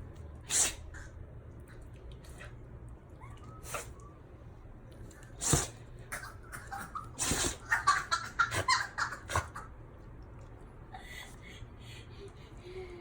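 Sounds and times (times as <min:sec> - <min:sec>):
dog sneezing: 0:00.4 - 0:01.1, 0:03.6 - 0:04.0, 0:05.4 - 0:05.9, 0:07.1 - 0:07.7.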